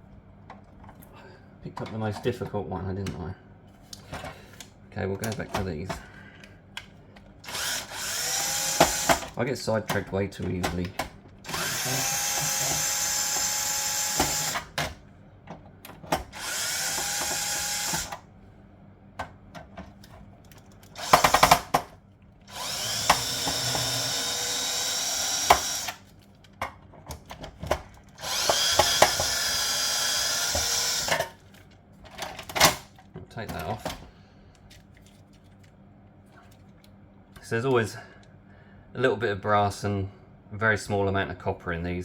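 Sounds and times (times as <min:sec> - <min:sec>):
cordless drill undoing screws: 0:07.4 - 0:09.4, 0:11.4 - 0:14.8, 0:16.2 - 0:18.2, 0:20.9 - 0:21.7, 0:22.5 - 0:26.0, 0:28.2 - 0:31.3.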